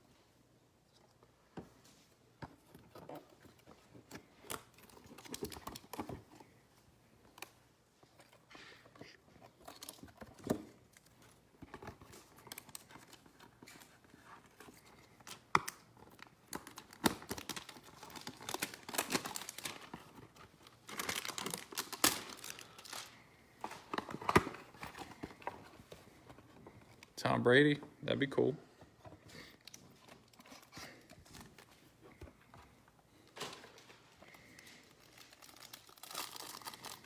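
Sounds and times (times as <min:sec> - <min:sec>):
plastic wrapping crinkling: 0:02.9 - 0:06.6, 0:09.5 - 0:27.2, 0:33.1 - 0:37.0.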